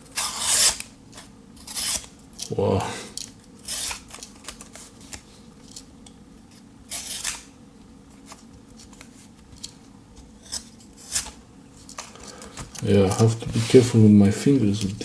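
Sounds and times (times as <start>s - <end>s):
knife blade scraping: 0.1s - 0.9s, 1.6s - 2.1s, 3.6s - 4.0s, 6.9s - 7.5s, 10.4s - 11.4s.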